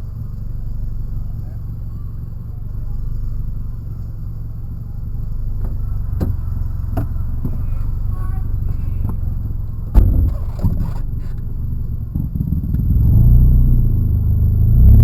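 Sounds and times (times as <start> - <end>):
vehicle engine rumbling: 0.0 - 15.0
sharp knocks: 9.9 - 11.0
loud thump: 9.9 - 11.1.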